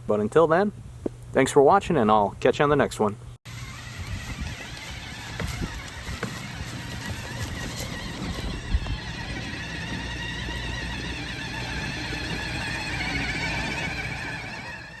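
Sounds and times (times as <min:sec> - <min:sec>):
toy truck electric motors whining: 0:03.5 - 0:15.0.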